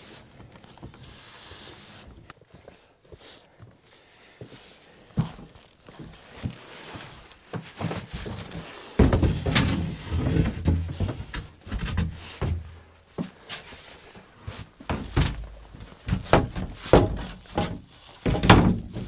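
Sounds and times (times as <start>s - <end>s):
knocks of wooden panels: 9.0s - 12.8s, 14.8s - 19.0s.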